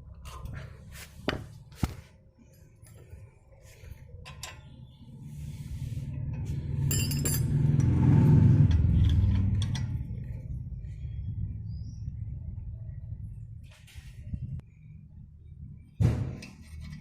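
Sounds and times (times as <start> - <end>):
low vehicle rumble: 3.4 - 16.1
metallic clinking rattle: 6.8 - 8.0.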